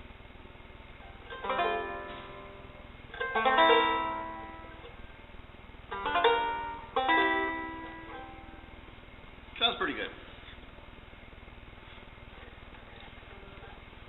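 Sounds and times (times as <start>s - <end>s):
banjo chords strummed: 1.2s - 5.0s, 5.9s - 8.8s.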